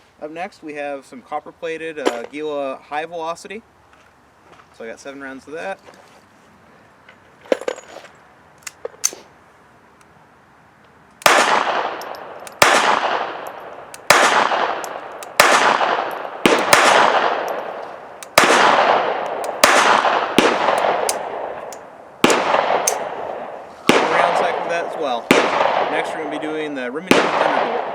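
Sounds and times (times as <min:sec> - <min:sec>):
pistol shots echoing: 0:11.2 - 0:27.9.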